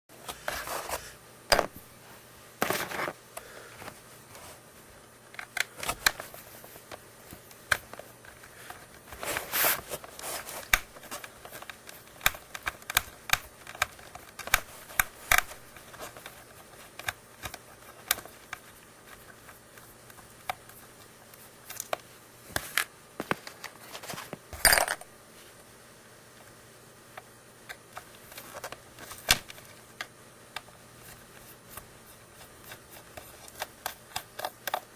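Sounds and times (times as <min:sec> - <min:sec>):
plastic parts clicking and knocking: 0:10.0 - 0:19.2.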